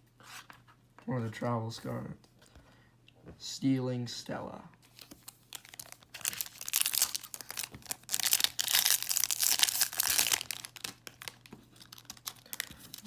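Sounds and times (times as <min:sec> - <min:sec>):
wrapper tearing and crinkling: 0:04.9 - 0:13.0.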